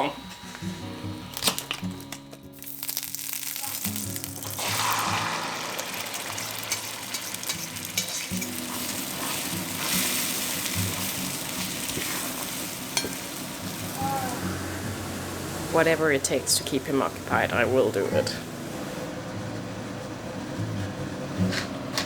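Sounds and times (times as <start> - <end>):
eggs sizzling in a pan: 2.0 - 18.9.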